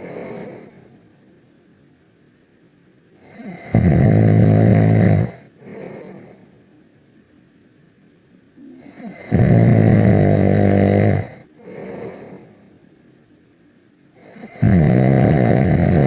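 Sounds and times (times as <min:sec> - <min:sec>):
quiet breath: 0:00.0 - 0:01.6, 0:05.2 - 0:07.0, 0:08.6 - 0:09.2, 0:11.2 - 0:13.2
loud buzzing snores: 0:03.2 - 0:06.3, 0:08.6 - 0:12.5, 0:14.2 - 0:16.0.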